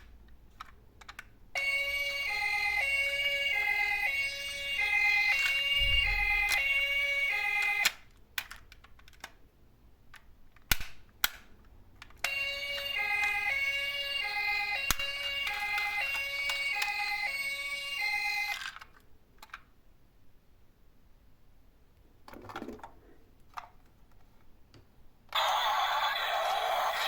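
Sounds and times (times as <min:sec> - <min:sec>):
toy cars clacking and knocking: 0:00.0 - 0:01.7, 0:05.3 - 0:09.4, 0:14.8 - 0:17.4, 0:18.5 - 0:19.7
toy hi-lo siren: 0:01.6 - 0:08.0, 0:12.2 - 0:18.8, 0:25.3 - 0:27.0.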